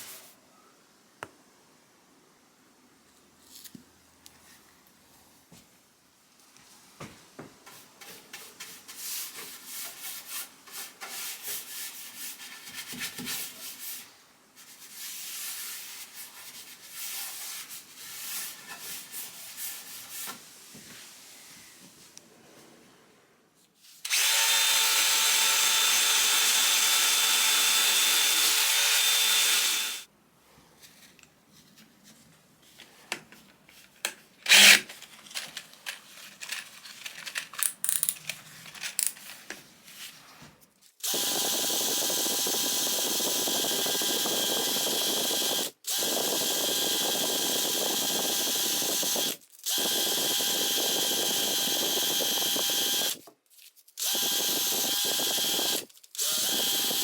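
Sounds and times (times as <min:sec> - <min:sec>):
power tool motor running: 0:24.1 - 0:30.1, 0:34.5 - 0:34.8, 0:41.0 - 0:53.2, 0:54.0 - 0:57.0
tool handling clicks: 0:34.0 - 0:39.3.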